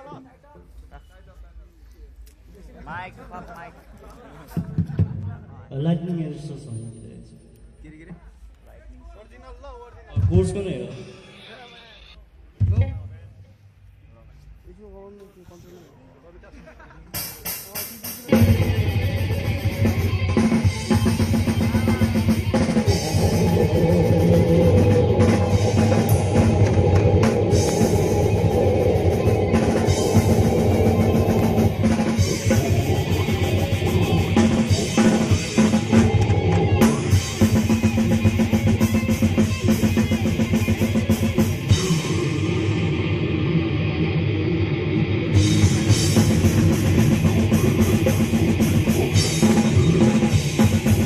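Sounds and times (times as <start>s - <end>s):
drum kit and bass drum: 17.2s - 42.7s, 45.3s - 51.0s
rock band playing: 17.2s - 51.0s.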